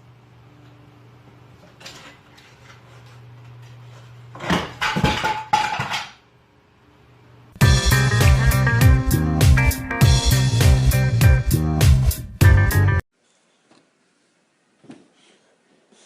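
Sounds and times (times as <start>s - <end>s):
music: 7.6s - 13.0s.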